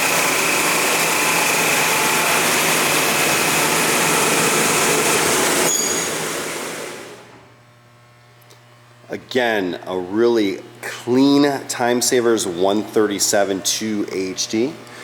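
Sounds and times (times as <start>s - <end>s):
sander winding down: 0.0s - 7.4s
belt sander hissing: 0.0s - 7.5s.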